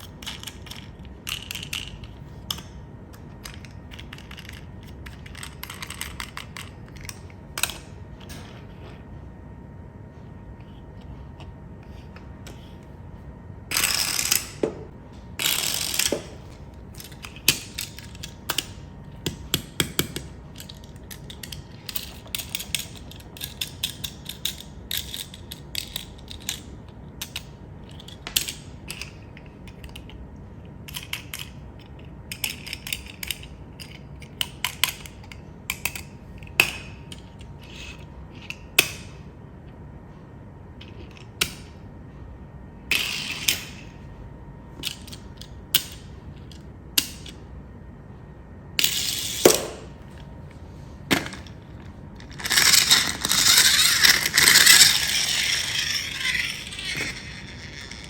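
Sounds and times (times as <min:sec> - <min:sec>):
small mechanical parts rattling: 0:00.0 - 0:02.7, 0:03.4 - 0:08.4, 0:51.1 - 0:58.0.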